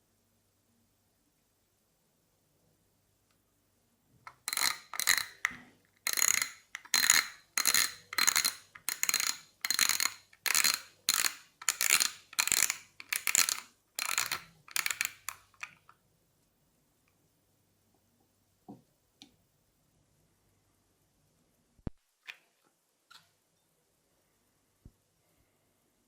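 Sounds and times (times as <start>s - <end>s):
fishing reel mechanism whirring: 4.4s - 5.5s, 6.1s - 15.4s.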